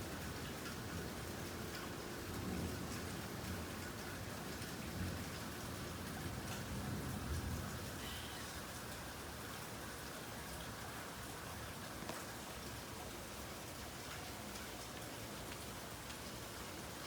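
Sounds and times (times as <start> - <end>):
steady rain falling: 0.0 - 17.0
low rumble of thunder: 2.3 - 8.0.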